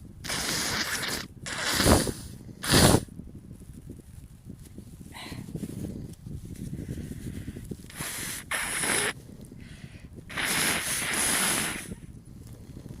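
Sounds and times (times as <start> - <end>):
person blowing nose: 0.2 - 3.1, 7.9 - 9.2, 10.3 - 12.0.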